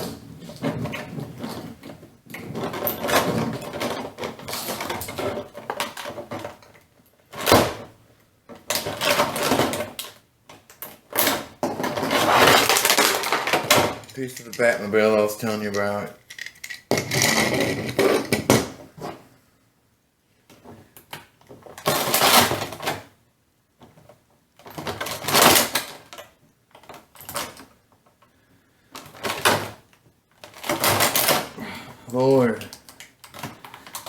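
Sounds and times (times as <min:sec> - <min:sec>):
toy packaging rustling and crinkling: 0:11.9 - 0:18.4.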